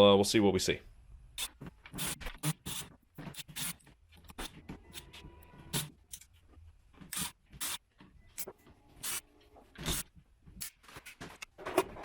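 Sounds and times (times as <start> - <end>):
screws clicking and scraping: 1.4 - 6.3.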